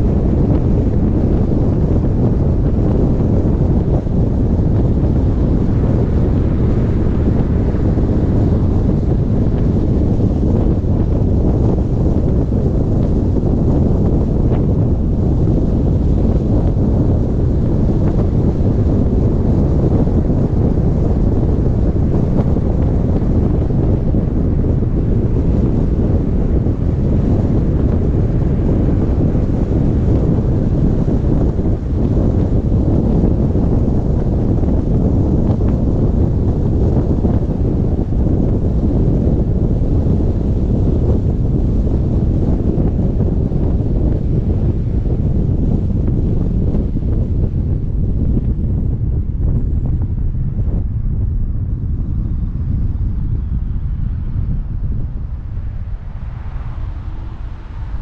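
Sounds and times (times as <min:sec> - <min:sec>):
low road rumble: 0:00.0 - 0:58.0
wind buffeting microphone: 0:00.0 - 0:58.0
road noise: 0:53.3 - 0:58.0.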